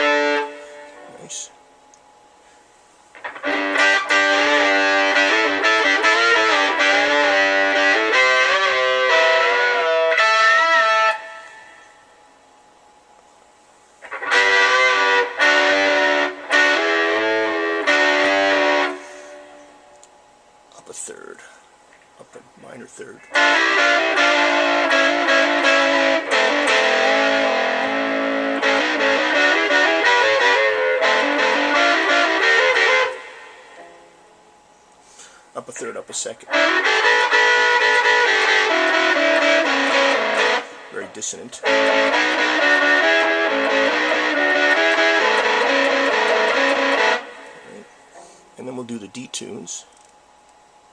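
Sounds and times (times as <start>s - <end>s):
electric guitar with pitch-shifted harmony: 0.0s - 1.1s, 3.1s - 12.0s, 14.0s - 19.9s, 23.3s - 34.5s, 36.5s - 48.4s.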